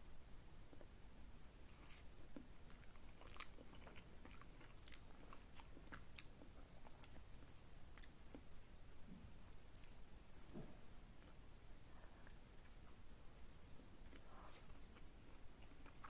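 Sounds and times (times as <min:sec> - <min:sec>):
wet chewing: 0:01.6 - 0:08.7, 0:13.8 - 0:16.0.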